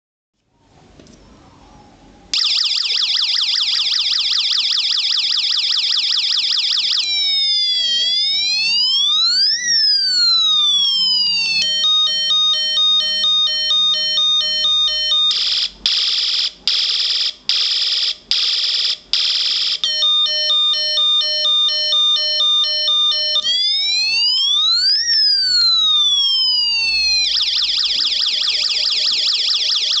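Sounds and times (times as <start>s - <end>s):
rising and falling siren wail: 2.3s - 15.7s, 19.8s - 30.0s
two-tone siren: 2.3s - 15.8s, 19.4s - 30.0s.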